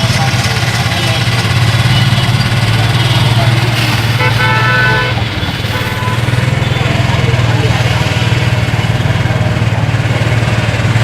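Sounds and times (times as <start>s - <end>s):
vehicle engine running: 0.0s - 11.0s
vehicle horn honking: 0.9s - 6.8s.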